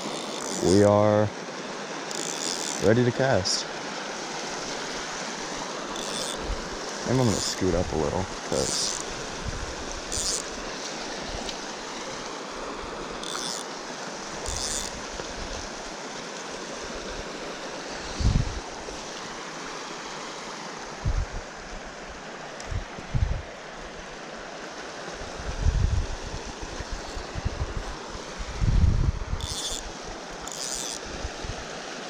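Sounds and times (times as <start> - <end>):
stream flowing over rocks: 0.0 - 22.6, 29.4 - 32.0
wind bumps on microphone: 9.3 - 9.8, 18.1 - 18.6, 21.0 - 21.5, 22.6 - 23.4, 25.4 - 29.4.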